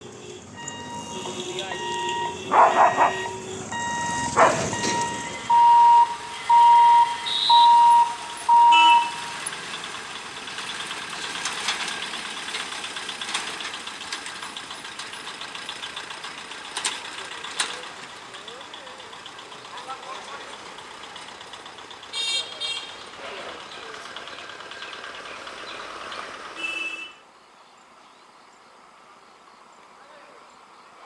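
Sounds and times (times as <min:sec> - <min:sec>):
low outdoor background: 0:00.0 - 0:31.0
electronic warning beeps: 0:00.6 - 0:09.5.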